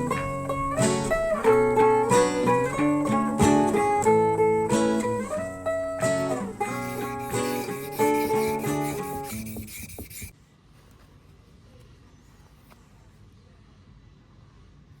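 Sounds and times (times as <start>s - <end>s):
acoustic guitar picking: 0.0s - 10.2s.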